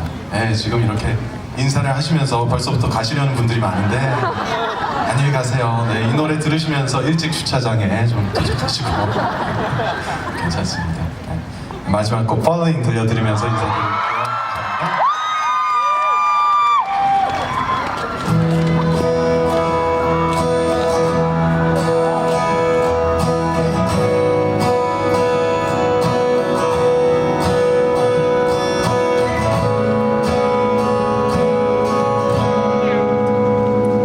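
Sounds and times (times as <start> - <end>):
live band playing: 17.1 - 34.0.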